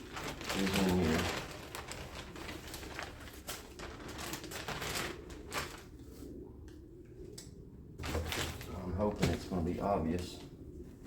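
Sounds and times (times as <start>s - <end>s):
packaging rustling: 0.0s - 6.2s, 8.0s - 10.6s.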